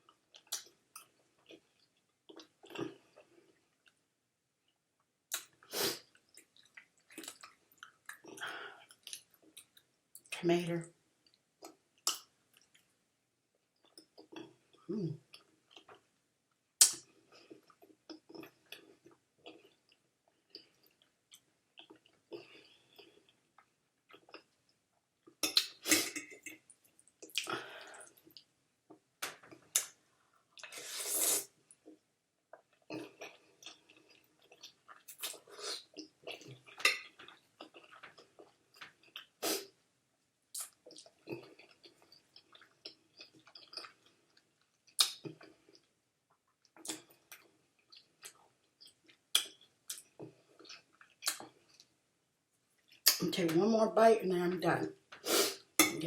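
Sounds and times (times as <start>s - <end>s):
wet chewing and lip-smacking: 40.6s - 45.9s, 46.6s - 51.9s.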